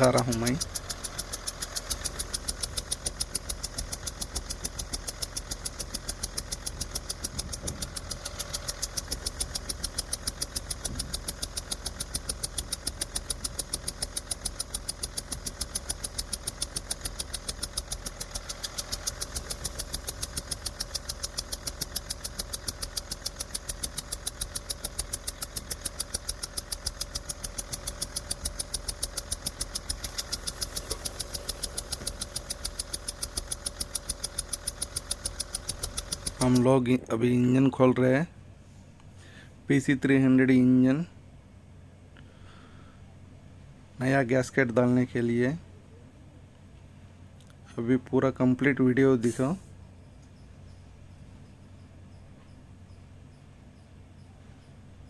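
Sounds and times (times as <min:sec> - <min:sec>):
diesel engine idling: 0:00.0 - 0:37.4
sharp regular engine tick: 0:00.0 - 0:38.0, 0:47.4 - 0:54.3.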